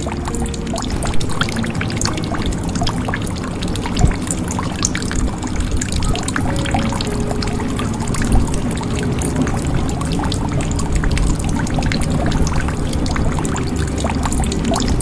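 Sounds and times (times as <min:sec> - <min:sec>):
water pouring into a jug: 0:00.0 - 0:15.0.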